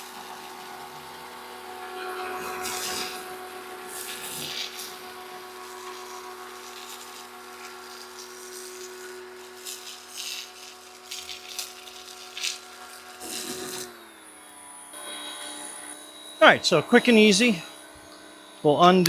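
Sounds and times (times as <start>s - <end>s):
hissing spray: 0.0s - 14.0s
pressure washer whine: 0.0s - 19.0s.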